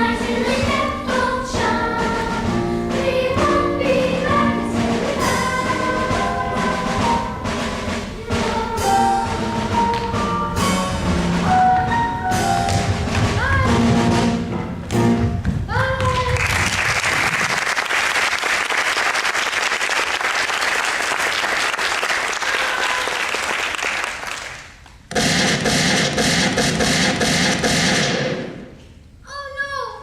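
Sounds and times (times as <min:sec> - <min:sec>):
orchestral music: 0:00.0 - 0:15.4
audience applause: 0:16.3 - 0:24.8.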